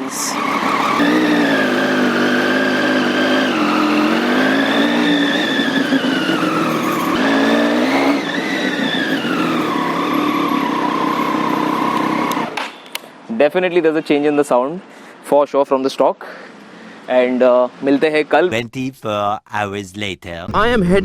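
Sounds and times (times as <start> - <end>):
motorcycle engine revving: 0.0 - 12.6.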